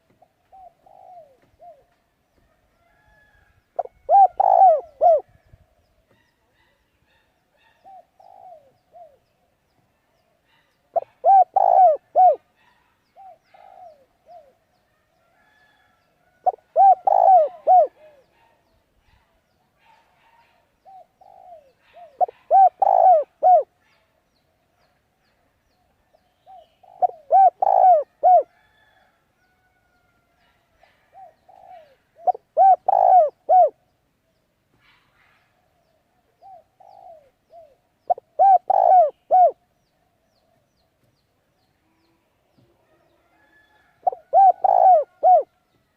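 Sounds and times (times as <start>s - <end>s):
bird calling: 3.8s - 5.2s, 11.0s - 12.4s, 16.5s - 18.3s, 20.8s - 23.7s, 26.5s - 28.5s, 31.2s - 33.8s, 36.4s - 39.6s, 44.1s - 45.5s.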